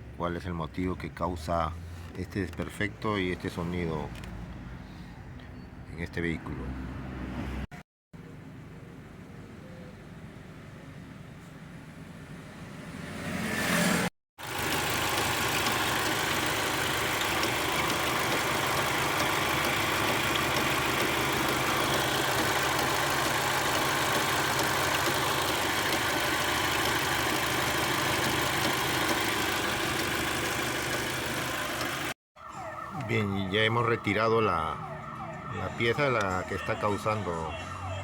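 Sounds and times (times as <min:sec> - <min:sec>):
car engine running: 0:14.4 - 0:32.2.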